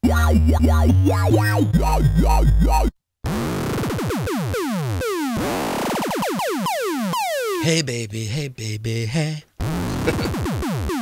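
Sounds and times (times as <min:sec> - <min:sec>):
deep synth bass notes: 0:00.0 - 0:03.8, 0:09.6 - 0:11.0.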